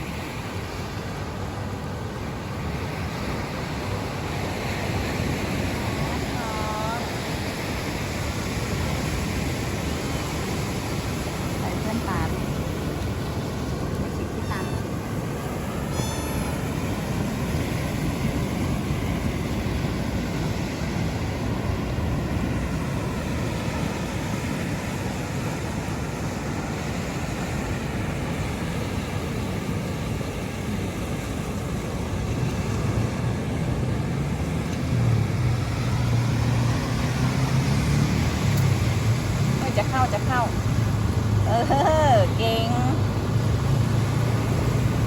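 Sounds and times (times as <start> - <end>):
road rumble: 0.0 - 45.0
car engine: 32.4 - 45.0.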